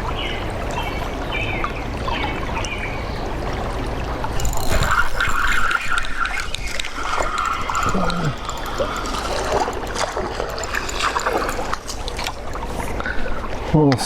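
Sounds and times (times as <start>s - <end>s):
creek water trickling: 0.0s - 14.0s
small clicks and splashes: 4.2s - 14.0s.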